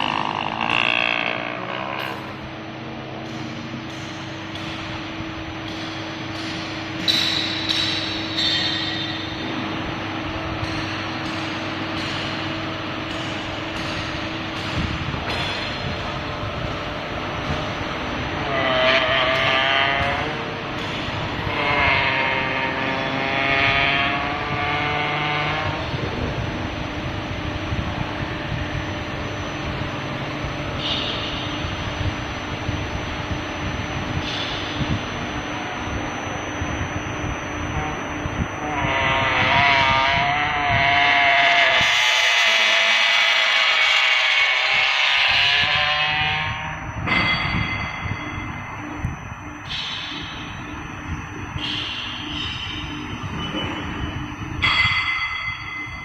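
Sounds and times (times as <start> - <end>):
sharp metallic clanks: 0.0 - 18.0, 46.9 - 50.7, 51.6 - 56.0
bending machine humming: 0.0 - 56.0.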